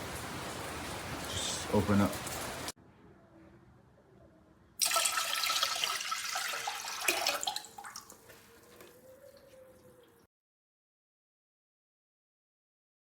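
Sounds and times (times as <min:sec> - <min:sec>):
water running and splashing: 0:04.8 - 0:09.0.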